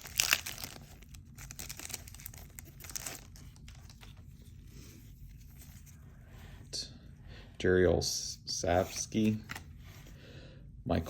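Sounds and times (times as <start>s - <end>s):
card pack wrapper ripping: 0.0s - 4.2s
wrapper crinkling: 0.0s - 4.2s
handling of cards: 0.0s - 6.1s, 8.8s - 10.2s.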